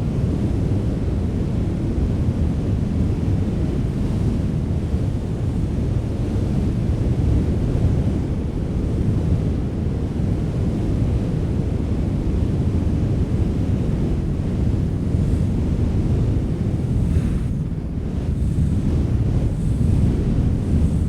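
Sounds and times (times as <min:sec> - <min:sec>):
wind blowing: 0:12.1 - 0:21.0.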